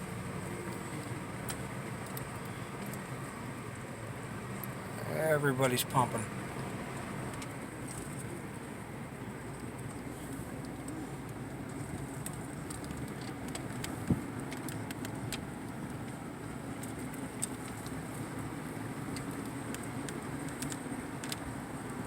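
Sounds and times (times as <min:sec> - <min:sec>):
car road and engine drone: 0:00.0 - 0:22.0.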